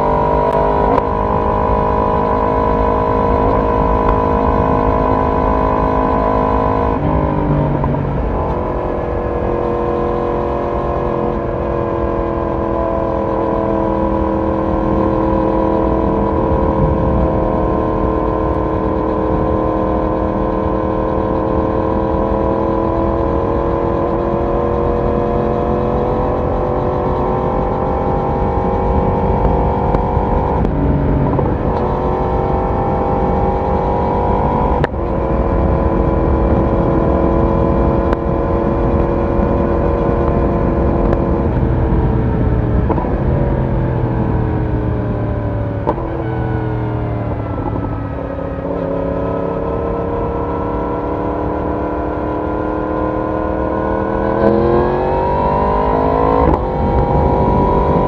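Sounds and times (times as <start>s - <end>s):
motorcycle exhaust cruising: 0.0s - 58.0s
wind rush: 25.7s - 49.2s.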